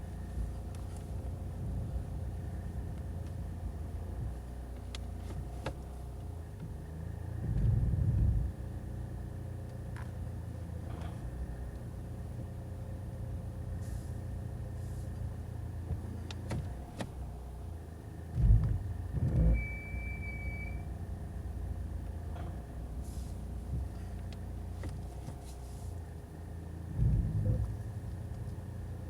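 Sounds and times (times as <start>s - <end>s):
diesel engine idling: 0.0s - 29.0s
dull low thumps: 1.4s - 4.7s, 6.5s - 8.6s, 18.2s - 19.7s, 23.6s - 24.1s, 26.8s - 28.2s
short high-pitched beep: 19.5s - 20.9s.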